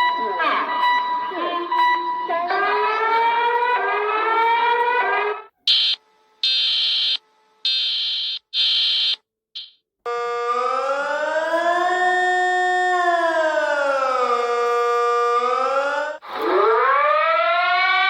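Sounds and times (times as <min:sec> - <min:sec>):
rising siren tone: 0:00.0 - 0:05.9, 0:10.1 - 0:18.0
siren wail: 0:00.0 - 0:07.2, 0:10.1 - 0:18.0
loud high-pitched beeps: 0:05.0 - 0:10.2.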